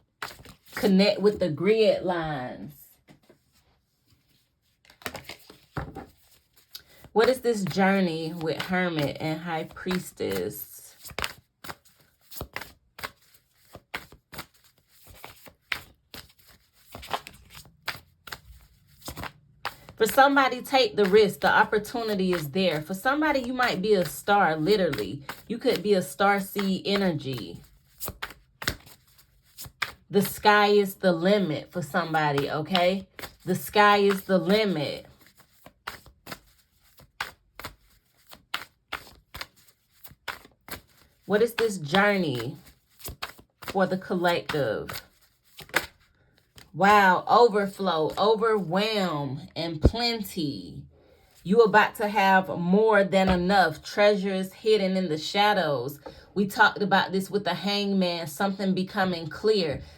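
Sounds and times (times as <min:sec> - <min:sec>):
cards shuffling: 0:00.2 - 0:00.9, 0:03.1 - 0:46.8.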